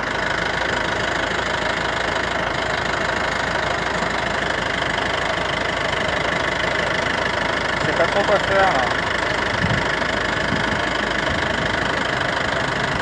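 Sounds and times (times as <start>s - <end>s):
jeep engine idling with knocking: 0.0s - 13.0s.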